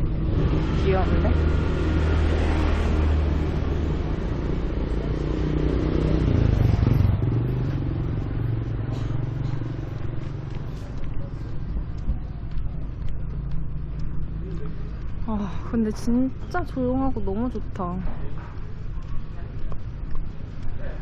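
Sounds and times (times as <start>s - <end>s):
vehicle passing by: 0.0s - 11.8s.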